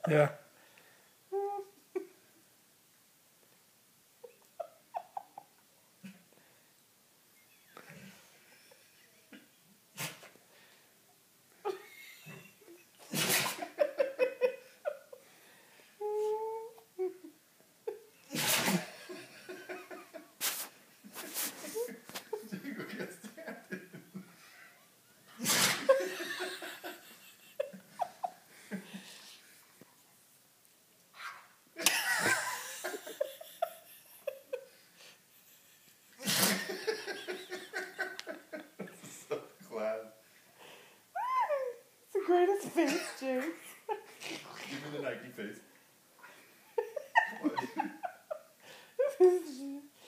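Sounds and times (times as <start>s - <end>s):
dog sneezing: 10.0s - 10.3s, 13.1s - 13.7s, 18.3s - 18.9s, 20.4s - 21.7s, 25.4s - 26.0s
people laughing: 11.7s - 15.2s, 21.6s - 24.3s, 25.4s - 29.1s, 31.8s - 34.7s, 35.6s - 39.6s, 46.8s - 48.5s.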